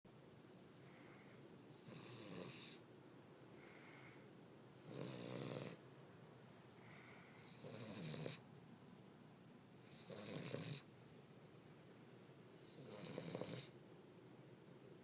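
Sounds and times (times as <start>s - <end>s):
dog snoring faintly: 0.9s - 2.8s, 4.8s - 5.8s, 6.8s - 8.5s, 9.8s - 10.9s, 12.5s - 13.8s.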